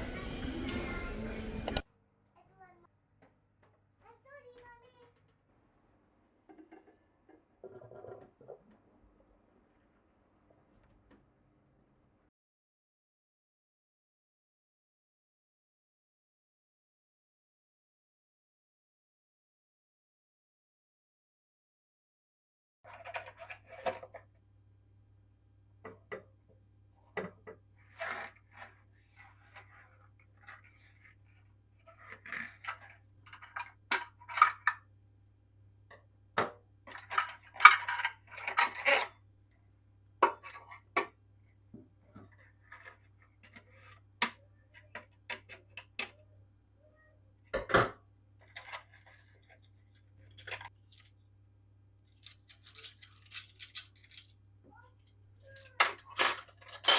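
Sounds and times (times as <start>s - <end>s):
dishes and cutlery clinking: 40.2s - 41.1s, 52.2s - 54.3s, 55.0s - 56.9s.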